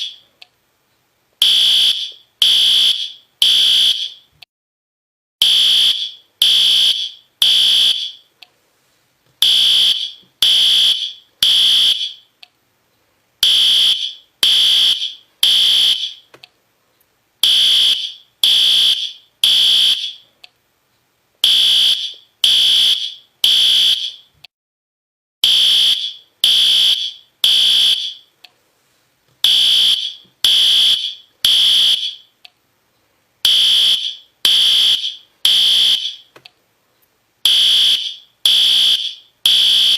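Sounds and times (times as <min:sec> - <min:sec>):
fire alarm horn beeps: 0:01.4 - 0:04.3, 0:05.4 - 0:08.3, 0:09.4 - 0:12.3, 0:13.4 - 0:16.3, 0:17.4 - 0:20.2, 0:21.4 - 0:24.3, 0:25.4 - 0:28.3, 0:29.4 - 0:32.3, 0:33.5 - 0:36.3, 0:37.5 - 0:39.9.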